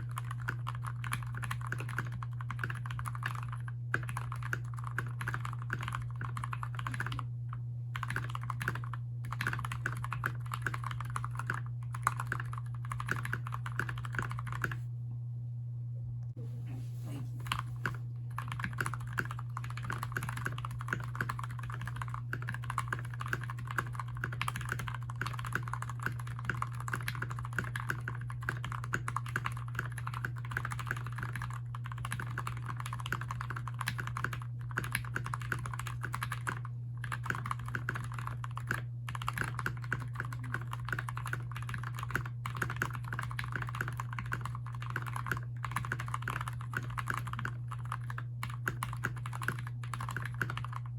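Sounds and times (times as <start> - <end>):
mechanical keyboard typing: 0.0 - 7.3, 8.0 - 14.8, 17.5 - 50.9
steady low hum: 0.0 - 50.9.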